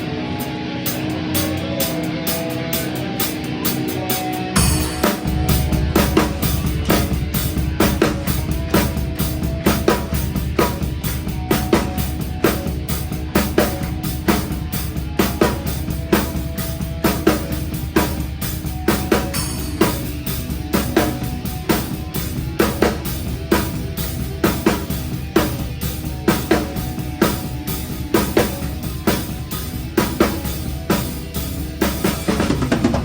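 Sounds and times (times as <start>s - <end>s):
metal band playing live: 0.0s - 33.0s
snare and cymbal hits: 0.9s - 33.0s.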